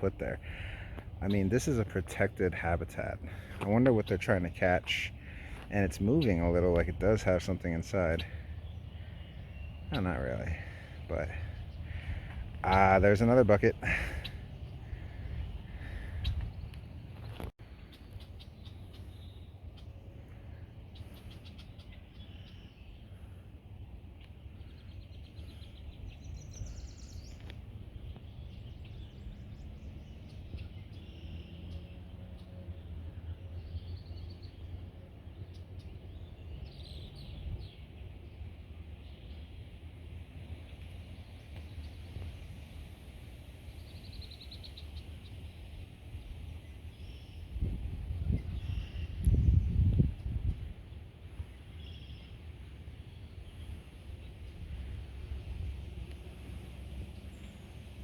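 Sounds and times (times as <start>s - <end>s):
birds calling: 0.0s - 58.0s
low outdoor rumble: 0.0s - 58.0s
wind rumble on microphone: 14.4s - 17.5s, 45.0s - 52.0s, 52.7s - 58.0s.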